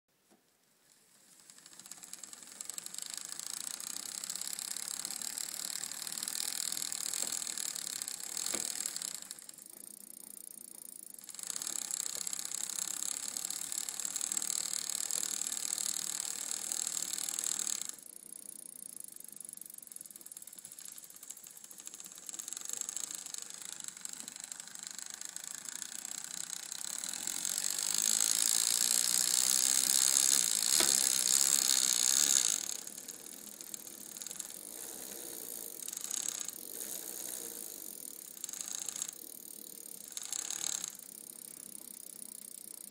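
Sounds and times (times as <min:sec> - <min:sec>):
bicycle chain running: 0:01.0 - 0:42.9
chain clicking on derailleur: 0:01.3 - 0:42.9.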